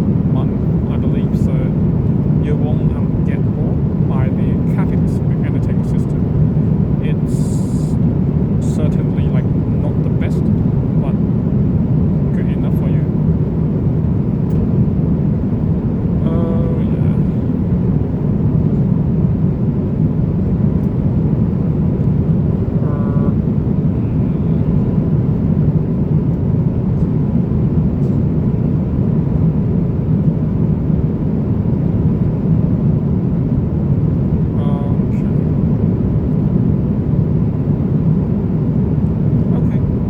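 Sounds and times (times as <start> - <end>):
airplane cabin engine roar: 0.0 - 40.0
faint voice: 16.2 - 17.4, 22.8 - 24.9, 34.6 - 35.5.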